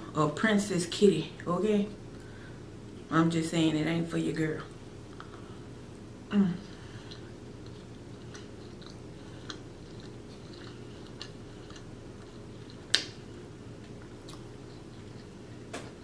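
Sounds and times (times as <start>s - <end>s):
faint steady hum: 0.0s - 16.0s
person chewing food: 6.6s - 16.0s.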